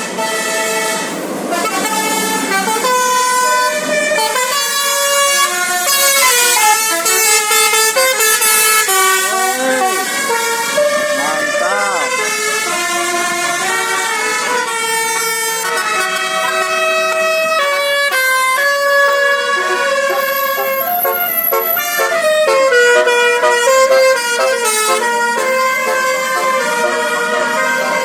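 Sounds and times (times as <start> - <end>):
bus musical horn playing tune: 0.0 - 28.0.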